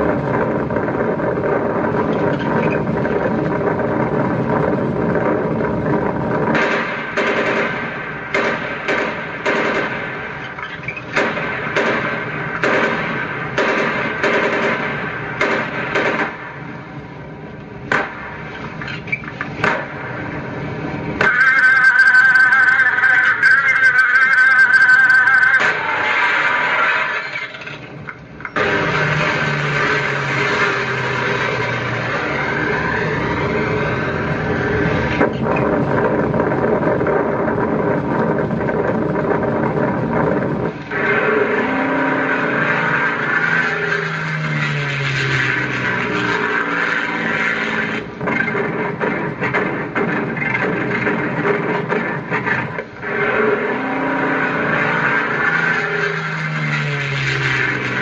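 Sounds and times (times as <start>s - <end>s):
steady low rumble: 0.0s - 21.6s, 22.6s - 41.6s
car driving on freeway: 0.0s - 58.0s.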